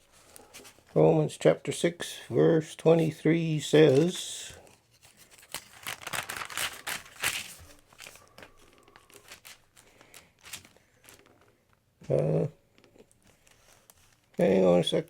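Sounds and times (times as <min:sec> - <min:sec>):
paper pages rustling: 0:00.0 - 0:01.0, 0:02.9 - 0:11.8, 0:13.0 - 0:14.5.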